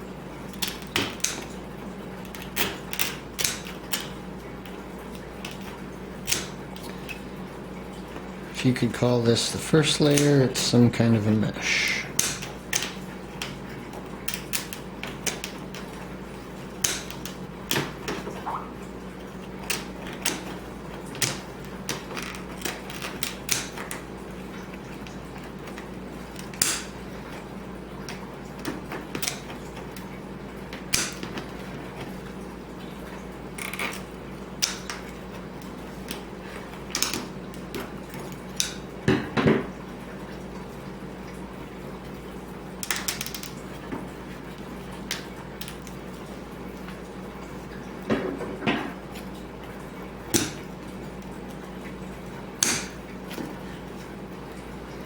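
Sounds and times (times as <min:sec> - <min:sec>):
steady low hum: 0:00.0 - 0:40.5.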